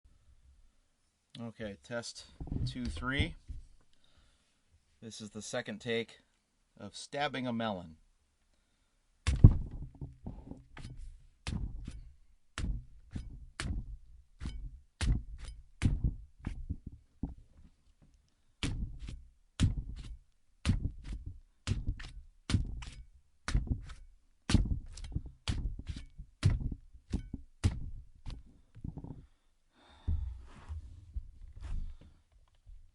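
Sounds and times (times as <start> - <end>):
melon being stabbed: 9.2 - 16.7, 18.6 - 28.0.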